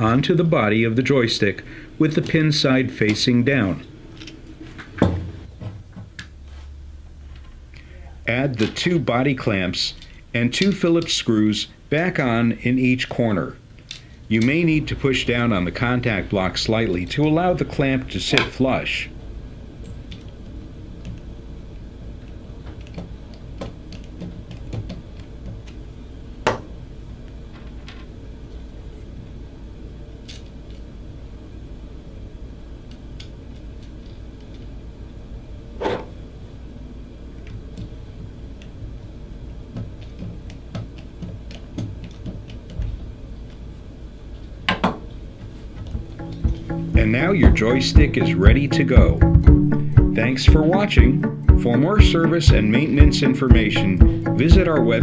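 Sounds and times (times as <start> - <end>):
steady low hum: 0.0 - 55.0.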